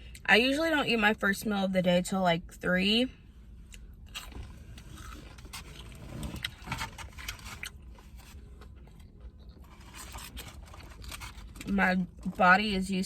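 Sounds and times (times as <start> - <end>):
chewing and mouth clicks: 3.7 - 12.4
food rustling and scraping: 4.1 - 12.5.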